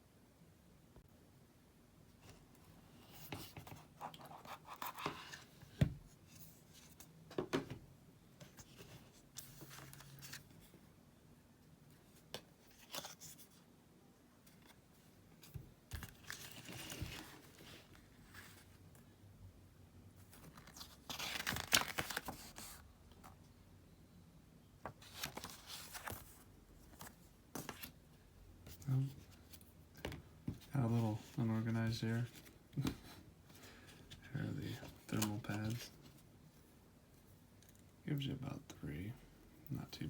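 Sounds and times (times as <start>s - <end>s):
plastic packaging crinkling and tearing: 20.6s - 22.6s.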